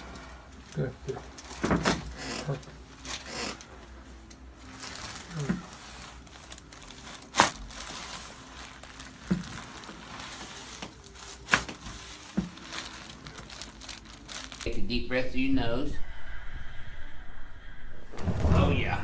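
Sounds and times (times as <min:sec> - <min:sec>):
clothing and table rustling: 0:00.0 - 0:14.7.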